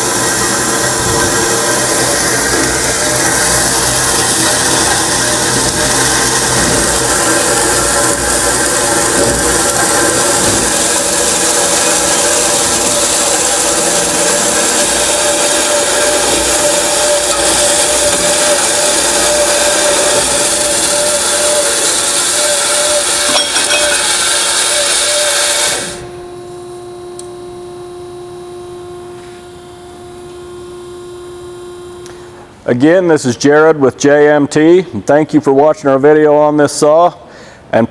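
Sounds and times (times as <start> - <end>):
band saw cutting metal: 0.0 - 26.2
steady machine hum: 0.0 - 37.9.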